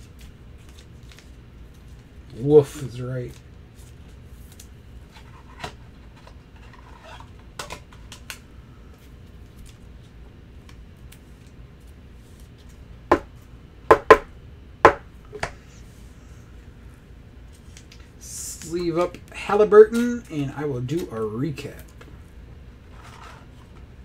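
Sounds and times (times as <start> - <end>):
cards rustling on table: 0.0 - 2.1, 2.9 - 12.8, 17.5 - 19.3, 22.9 - 23.9.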